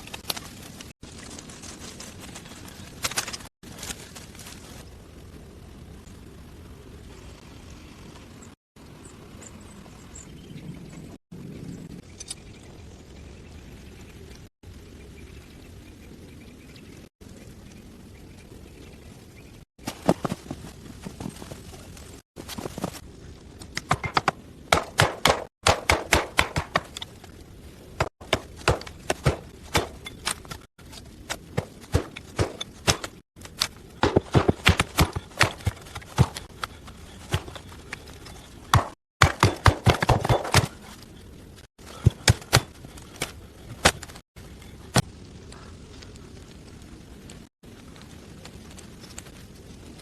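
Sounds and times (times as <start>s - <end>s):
rapid sharp knocks: 23.9s - 26.9s.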